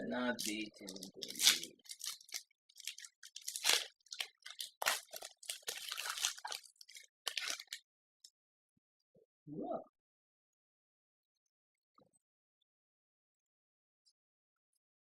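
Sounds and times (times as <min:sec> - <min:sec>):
foil wrapper crinkling and tearing: 0:00.3 - 0:07.8.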